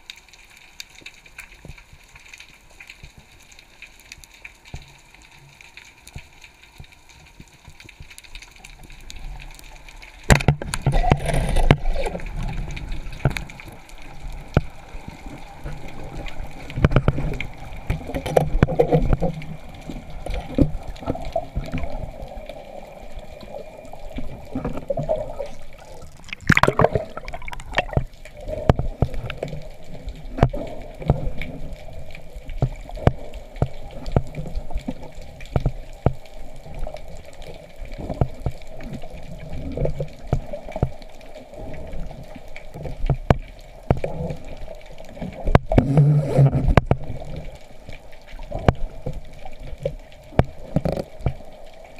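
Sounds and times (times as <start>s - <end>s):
sharp clicks and knocks: 10.3s - 12.2s
water sloshing: 10.3s - 31.4s.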